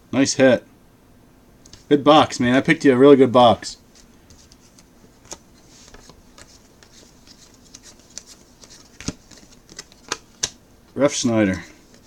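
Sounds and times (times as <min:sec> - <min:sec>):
trading cards handled: 0:03.9 - 0:12.0.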